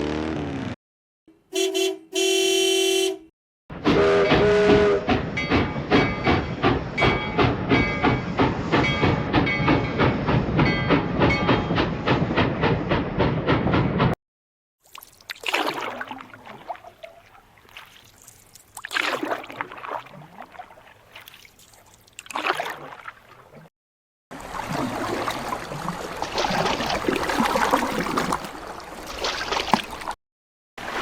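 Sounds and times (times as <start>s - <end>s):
train whistle blasts: 1.5s - 3.2s, 3.8s - 5.2s
train rhythmic clatter: 3.8s - 14.2s.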